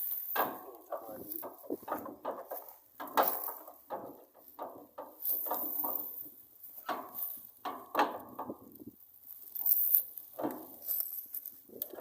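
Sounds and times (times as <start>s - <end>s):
metallic clanks and knocks: 0.3s - 8.9s, 10.3s - 11.0s.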